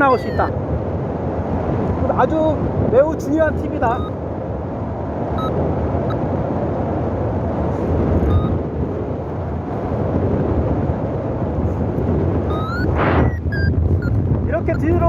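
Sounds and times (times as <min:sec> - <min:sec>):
faint high tones: 0:00.0 - 0:00.5, 0:12.5 - 0:13.7
wind rushing over microphone: 0:00.0 - 0:15.0.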